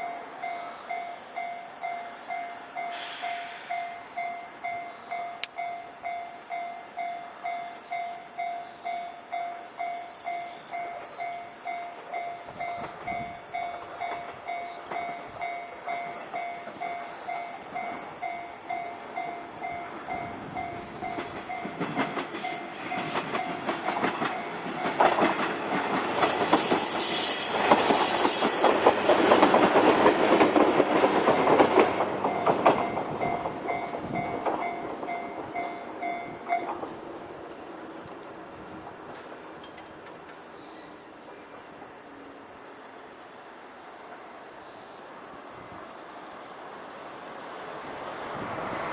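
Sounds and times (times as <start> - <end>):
level-crossing alarm ringing: 0.0 - 25.3, 32.2 - 36.8
train running over crossing: 0.0 - 45.2
brief high hiss: 2.9 - 3.8, 26.1 - 28.8.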